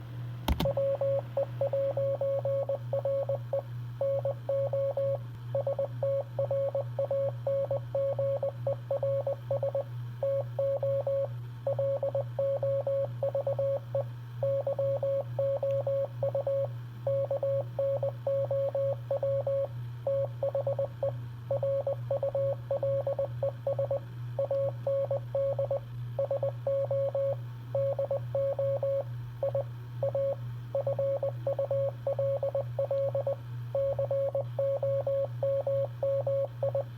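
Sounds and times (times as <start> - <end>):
steady low hum: 0.0 - 36.9
morse code beeps: 21.5 - 36.8.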